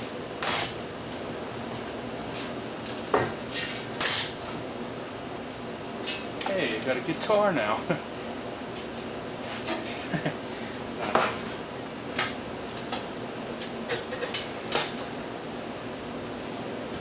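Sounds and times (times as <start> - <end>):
steady background hum: 0.0 - 17.0
metal fan parts clinking: 6.0 - 7.4.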